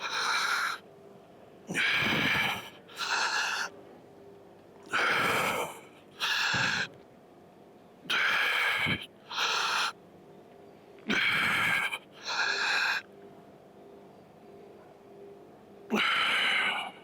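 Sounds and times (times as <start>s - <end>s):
man breathing hard: 0.0s - 0.8s, 1.7s - 3.7s, 4.9s - 7.0s, 8.1s - 10.0s, 11.0s - 13.1s, 15.9s - 17.0s.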